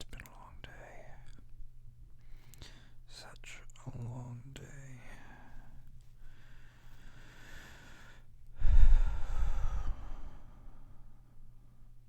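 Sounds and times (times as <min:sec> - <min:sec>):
person breathing and sighing: 0:07.1 - 0:11.0.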